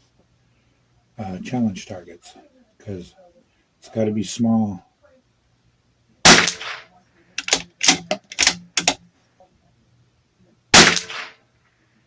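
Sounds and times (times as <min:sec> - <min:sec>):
rifle shots: 0:06.2 - 0:09.0, 0:10.7 - 0:11.4
rifle bolt metallic clicks: 0:07.4 - 0:09.0.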